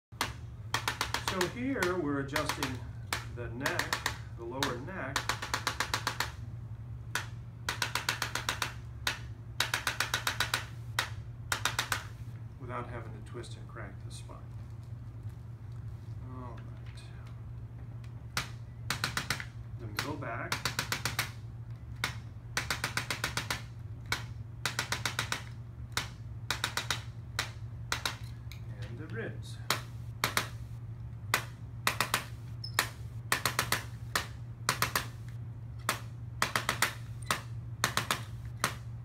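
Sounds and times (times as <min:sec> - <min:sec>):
sharp clicks of adjusting instrument: 0:00.2 - 0:06.4, 0:07.1 - 0:12.2, 0:18.0 - 0:30.6.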